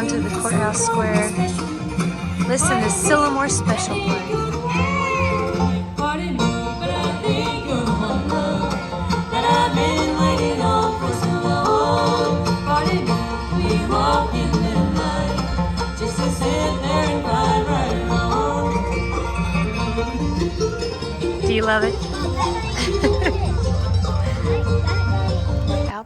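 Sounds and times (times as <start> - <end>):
person singing: 0.0 - 19.8
bluegrass band playing: 0.0 - 26.0.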